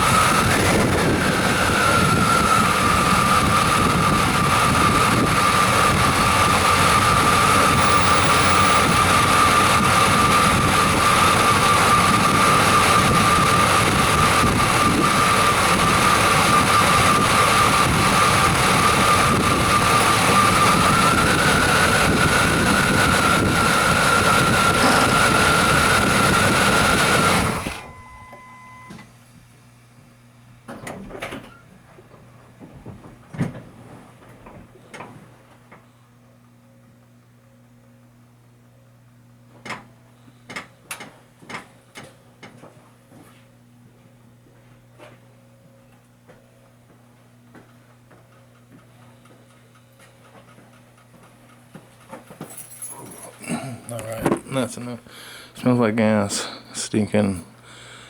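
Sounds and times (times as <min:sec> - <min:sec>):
truck engine running: 0:00.0 - 0:28.3
high engine whine: 0:00.0 - 0:30.0, 0:52.2 - 0:58.0.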